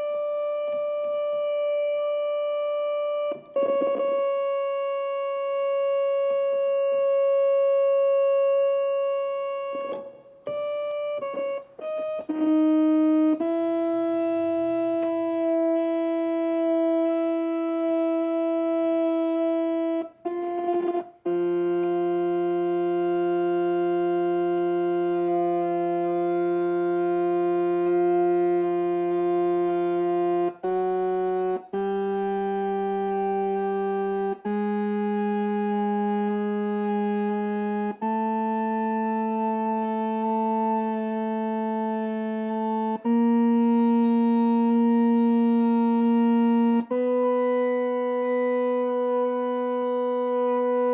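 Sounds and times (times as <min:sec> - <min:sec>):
electronic organ chords: 0:00.0 - 0:50.9.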